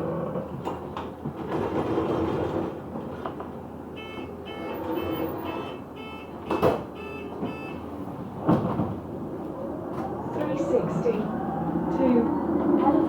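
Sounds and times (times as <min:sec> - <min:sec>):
bus engine running: 0:00.0 - 0:13.0
bus door warning beeps: 0:03.9 - 0:08.0.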